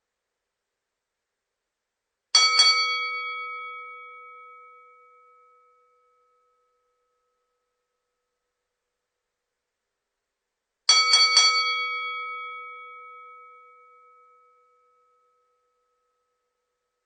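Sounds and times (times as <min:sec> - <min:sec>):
boxing ring bell ringing: 0:02.4 - 0:07.4, 0:10.9 - 0:16.4.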